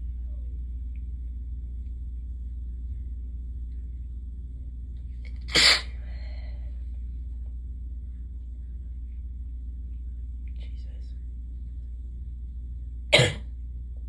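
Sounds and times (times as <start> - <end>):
steady low hum: 0.0 - 14.0
person sneezing: 5.5 - 6.0, 13.2 - 13.4.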